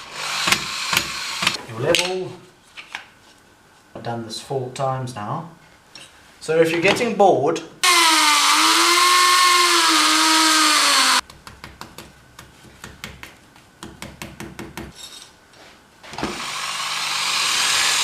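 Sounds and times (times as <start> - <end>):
power drill whining: 0.0 - 1.6, 7.8 - 11.2, 16.1 - 18.0.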